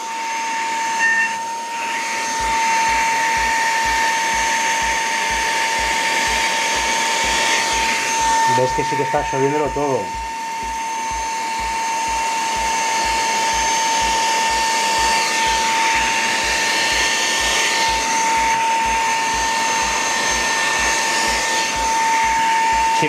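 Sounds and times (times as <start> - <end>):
handheld vacuum motor whine: 0.0 - 23.0
vacuum airflow hiss: 0.0 - 23.0.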